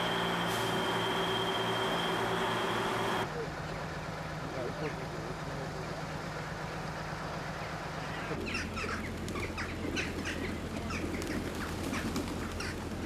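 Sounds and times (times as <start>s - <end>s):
low hum: 0.0s - 3.3s
flock of birds chirping: 7.6s - 13.0s.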